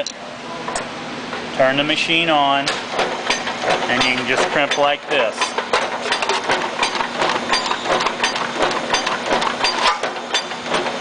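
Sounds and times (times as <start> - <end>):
metallic clicks and clacks: 2.7 - 11.0.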